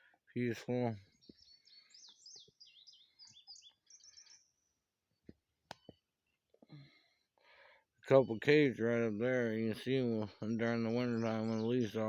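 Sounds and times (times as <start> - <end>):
bird chirping: 0.0 - 6.7, 8.0 - 12.0.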